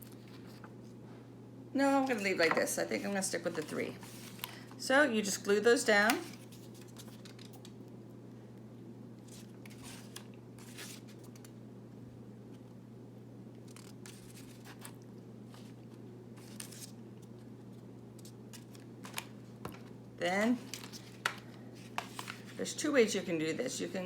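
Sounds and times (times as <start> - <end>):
low electrical hum: 0.0 - 24.0
paper rustling and scraping: 3.4 - 4.6, 9.2 - 11.5, 13.7 - 17.0, 20.7 - 22.6.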